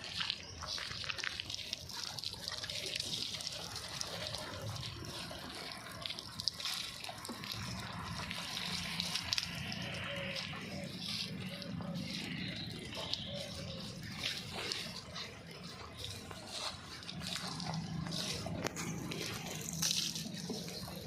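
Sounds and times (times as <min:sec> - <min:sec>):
wet mud sloshing and splattering: 0:00.0 - 0:21.0
diesel engine running: 0:14.8 - 0:21.0.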